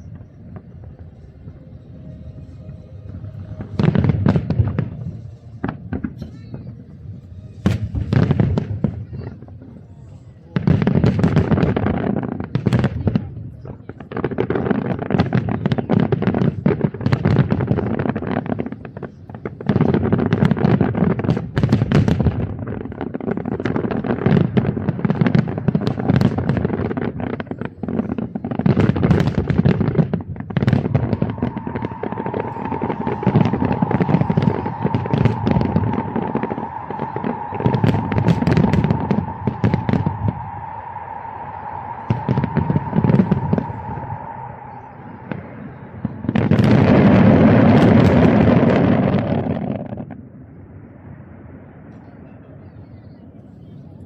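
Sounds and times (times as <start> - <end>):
steady high tone: 0.0 - 5.9, 30.8 - 47.6
deep booming fireworks salvos: 0.0 - 9.9, 10.5 - 52.5
fireworks crackling and popping: 0.0 - 50.4.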